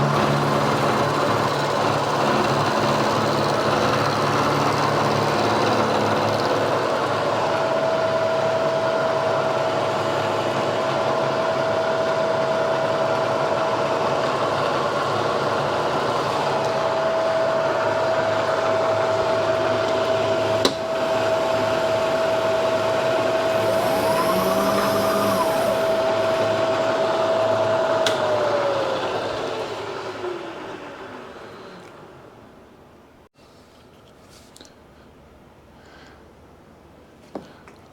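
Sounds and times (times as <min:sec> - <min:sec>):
milling machine motor whine: 0:00.0 - 0:08.4, 0:20.4 - 0:31.6
cutter cutting steel: 0:21.0 - 0:26.0.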